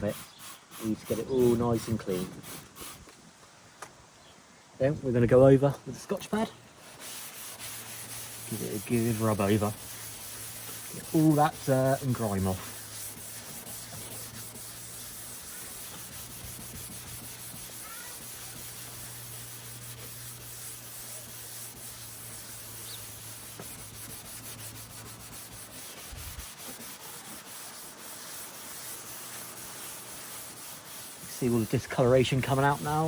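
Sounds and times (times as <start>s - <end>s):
scouring pad scrubbing plastic: 6.8s - 33.0s.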